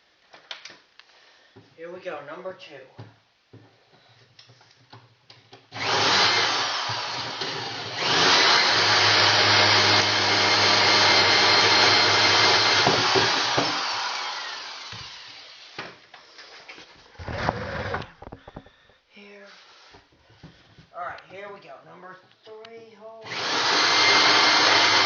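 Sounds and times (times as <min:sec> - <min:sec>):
drill boring through wood: 0:05.7 - 0:15.8, 0:17.2 - 0:18.2, 0:23.2 - 0:25.0.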